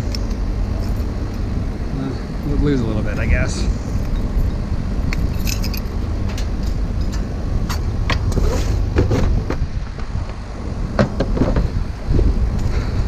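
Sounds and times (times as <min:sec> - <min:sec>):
engine rumbling: 0:00.0 - 0:13.0.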